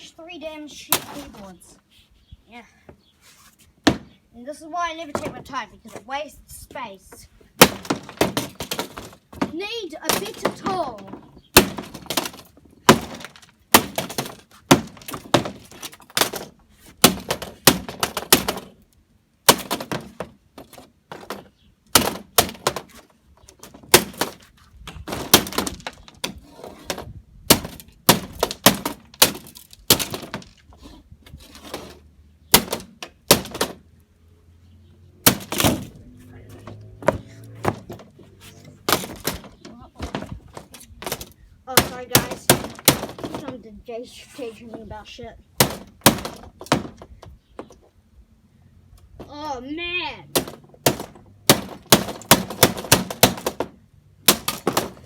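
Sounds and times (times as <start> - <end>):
blows cracking plastic casing: 7.6 - 10.8, 11.4 - 30.7, 31.6 - 33.8, 35.2 - 36.0, 38.9 - 43.6, 45.6 - 47.3, 50.4 - 55.0.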